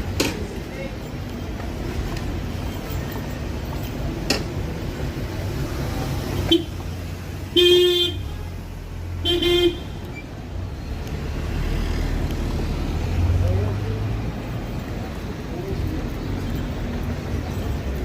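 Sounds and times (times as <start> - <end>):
street traffic rumble: 0.0 - 18.0
vehicle horn honking: 7.5 - 8.6, 9.2 - 10.0.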